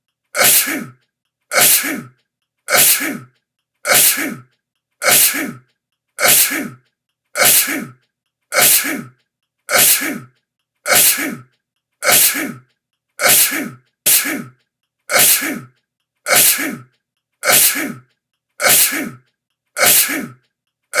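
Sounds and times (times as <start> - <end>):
person sneezing: 0.4 - 0.9, 1.5 - 2.1, 2.7 - 3.3, 3.9 - 4.4, 5.0 - 5.6, 6.2 - 6.8, 7.4 - 7.9, 8.6 - 9.1, 9.7 - 10.3, 10.9 - 11.4, 12.0 - 12.6, 13.2 - 14.5, 15.1 - 15.7, 16.3 - 16.8, 17.4 - 18.0, 18.6 - 19.2, 19.8 - 20.4.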